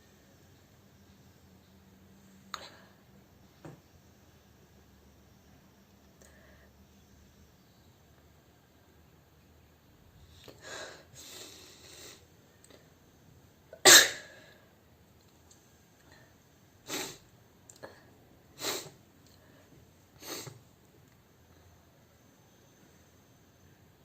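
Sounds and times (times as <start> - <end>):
soft breathy noises: 6.2 - 6.9, 10.2 - 13.0
woman sneezing: 13.8 - 14.4.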